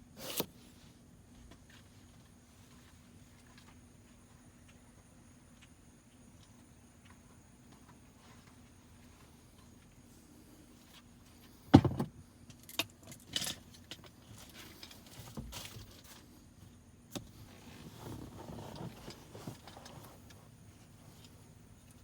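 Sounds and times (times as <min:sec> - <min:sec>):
clicks and knocks of parts: 0:11.8 - 0:16.1
rustling and clatter: 0:17.4 - 0:22.0.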